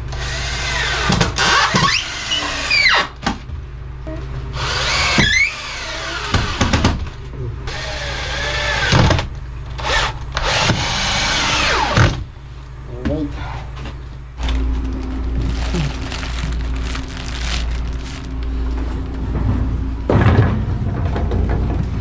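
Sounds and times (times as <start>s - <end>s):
steady low hum: 12.2s - 20.8s.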